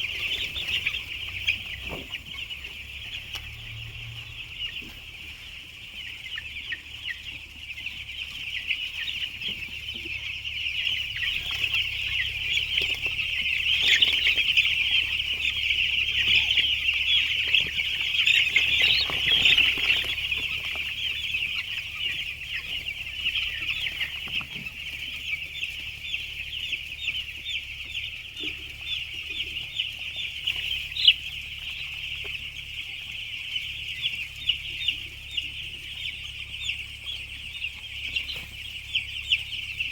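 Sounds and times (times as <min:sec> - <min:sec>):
chicks peeping: 0:00.0 - 0:39.9.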